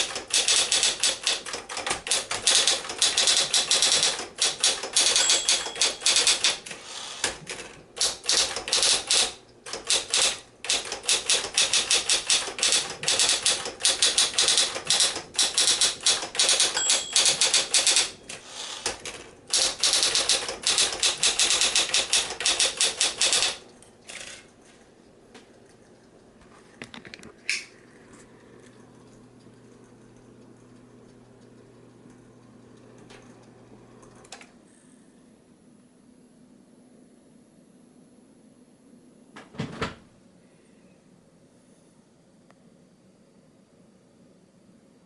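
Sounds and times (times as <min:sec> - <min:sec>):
electric typewriter typing: 0:00.0 - 0:24.5.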